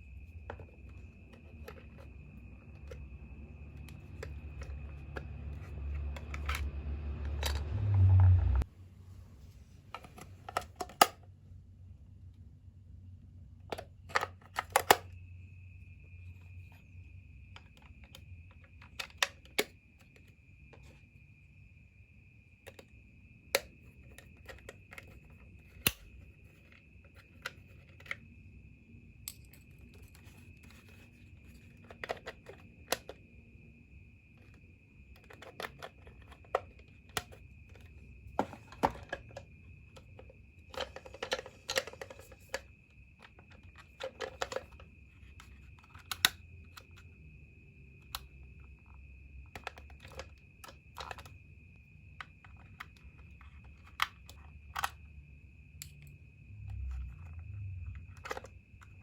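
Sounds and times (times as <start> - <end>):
low rumble: 6.1 - 9.4.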